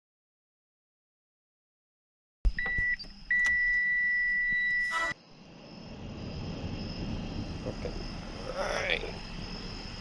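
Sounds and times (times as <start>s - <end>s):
low steady rumble: 5.2s - 10.0s.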